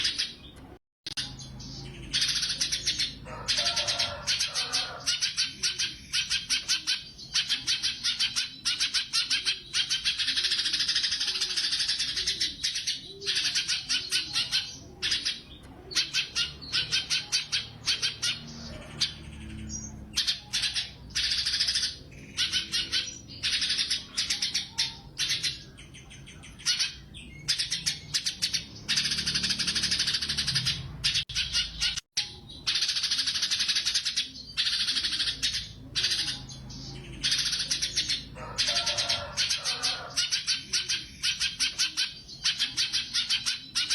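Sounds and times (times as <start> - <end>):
songbird singing rapid notes: 0.0 - 43.9.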